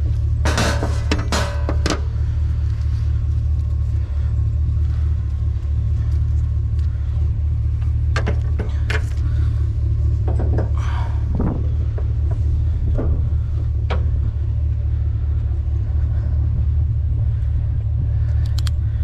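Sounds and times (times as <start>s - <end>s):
truck engine and road rumble: 0.0s - 19.0s
knocks and rattles: 0.3s - 2.4s, 7.7s - 14.6s.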